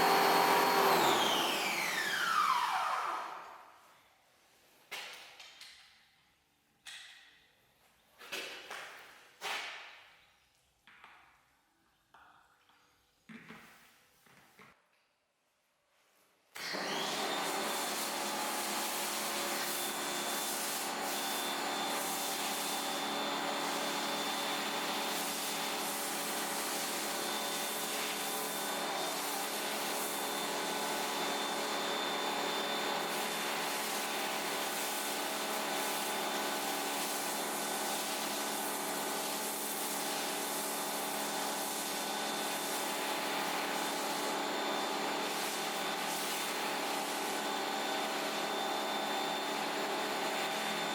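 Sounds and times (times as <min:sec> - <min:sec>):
motor and pump humming: 0:00.0 - 0:02.9
pressure washer spraying: 0:17.4 - 0:31.1.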